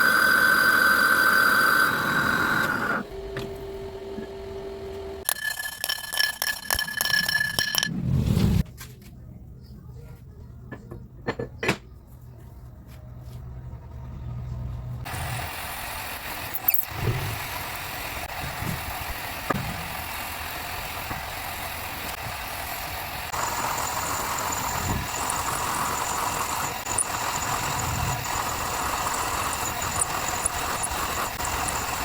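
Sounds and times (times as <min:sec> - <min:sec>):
machine running steadily: 0:15.0 - 0:32.0
high whine: 0:23.3 - 0:32.0.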